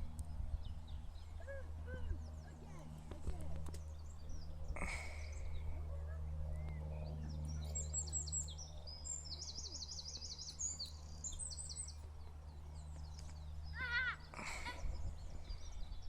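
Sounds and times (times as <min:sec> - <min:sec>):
steady low hum: 0:00.0 - 0:16.0
bird chirping: 0:06.5 - 0:16.0.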